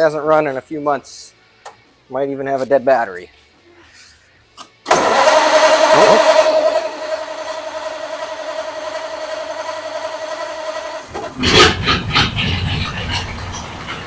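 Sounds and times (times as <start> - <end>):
car engine starting and idling: 4.9 - 14.0.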